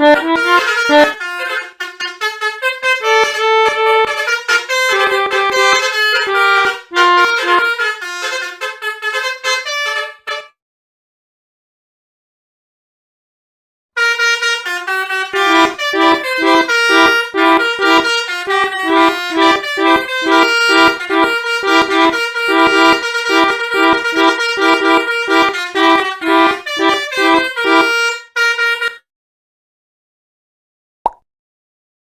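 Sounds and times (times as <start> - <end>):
melodica playing: 0.0 - 10.5, 14.0 - 29.0.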